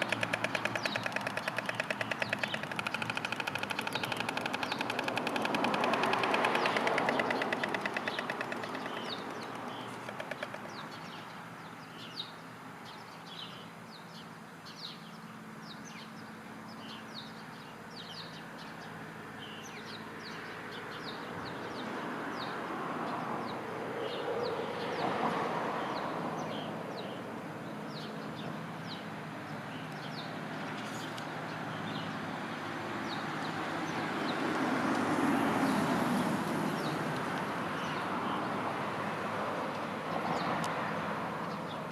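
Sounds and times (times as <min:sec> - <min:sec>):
stork bill clattering: 0:00.0 - 0:11.2
small birds chirping: 0:00.0 - 0:22.6, 0:25.8 - 0:32.4
road traffic passing: 0:00.0 - 0:41.9.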